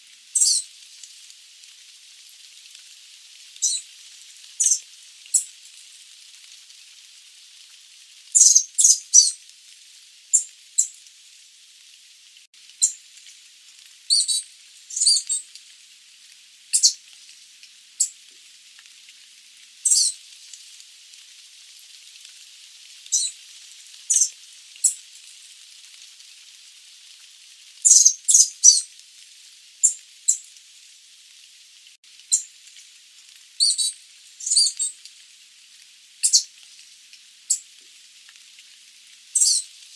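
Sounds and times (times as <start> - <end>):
faint steady hiss: 0.0 - 39.9
birds giving squeaky calls: 0.4 - 0.6, 3.6 - 3.8, 4.6 - 4.8, 8.4 - 9.3, 14.1 - 15.4, 16.8 - 17.0, 19.9 - 20.1, 24.1 - 25.0, 27.9 - 28.8, 33.6 - 34.8, 36.2 - 36.5, 39.4 - 39.6.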